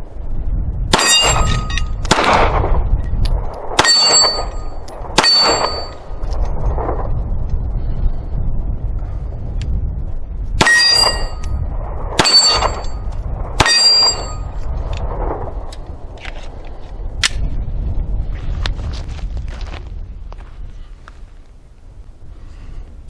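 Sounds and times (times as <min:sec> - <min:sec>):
wind on microphone: 0:00.0 - 0:23.0
steel plates clanging: 0:13.6 - 0:14.4.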